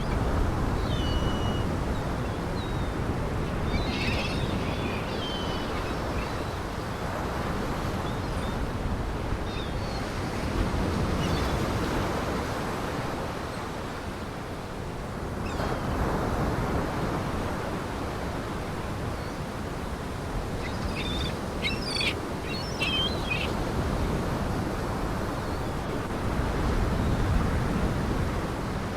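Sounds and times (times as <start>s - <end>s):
waves washing onto shore: 0.0s - 28.9s
bird chirping: 2.6s - 6.4s, 20.5s - 23.6s.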